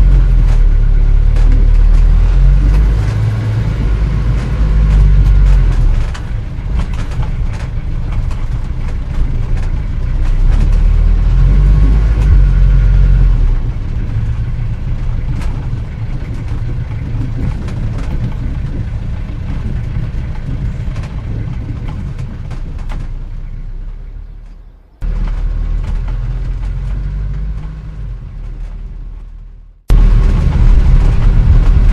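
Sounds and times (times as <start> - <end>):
old car engine rumbling: 0.0 - 31.9
ticks and rattles: 0.0 - 31.9.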